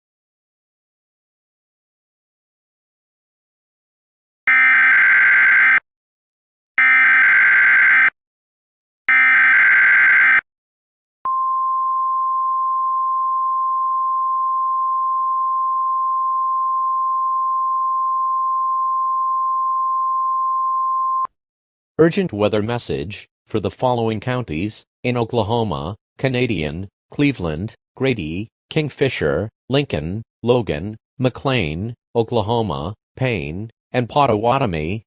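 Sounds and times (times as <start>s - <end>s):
steady warning alarm tone: 4.5s - 5.8s, 6.8s - 8.2s, 9.1s - 10.4s.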